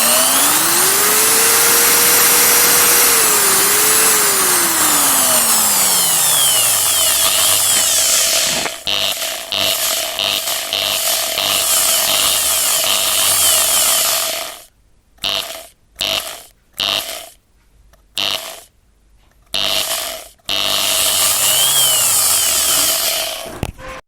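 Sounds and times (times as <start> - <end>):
electric drill running: 0.0 - 14.6, 18.2 - 18.6, 19.6 - 23.6.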